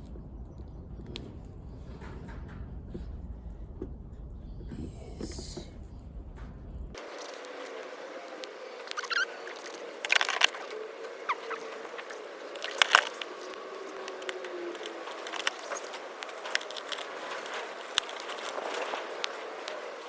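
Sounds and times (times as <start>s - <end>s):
plastic housing clicking and scraping: 5.2s - 20.0s
plastic parts clattering: 7.0s - 20.0s.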